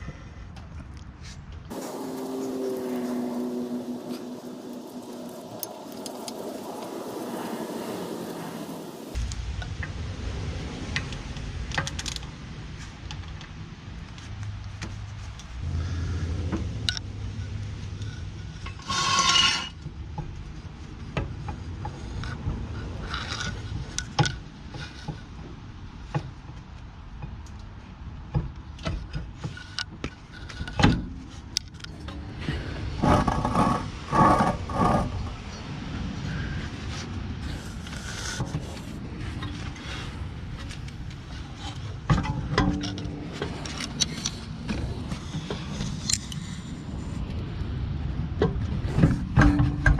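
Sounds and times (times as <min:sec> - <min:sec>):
metal tools clinking and scraping: 0:18.6 - 0:19.8.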